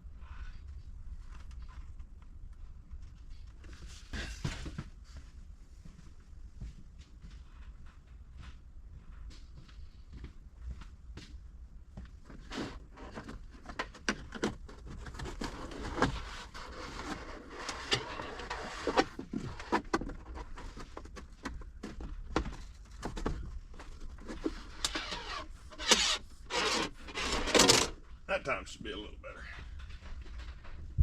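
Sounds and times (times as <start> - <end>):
plastic trim rubbing and clicking: 12.5 - 28.0.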